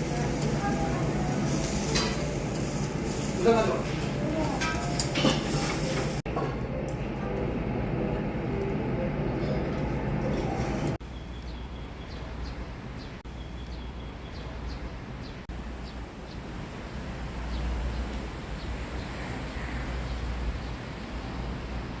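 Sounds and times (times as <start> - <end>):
small birds chirping: 11.0 - 20.9.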